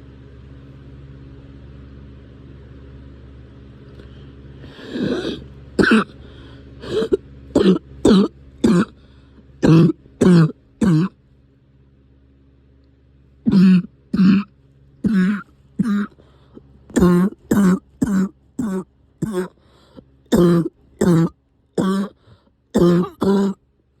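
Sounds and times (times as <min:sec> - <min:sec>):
person coughing: 0:04.9 - 0:06.2, 0:06.8 - 0:09.0, 0:09.6 - 0:11.2, 0:13.5 - 0:16.2, 0:16.9 - 0:19.6, 0:20.3 - 0:22.2, 0:22.8 - 0:23.6.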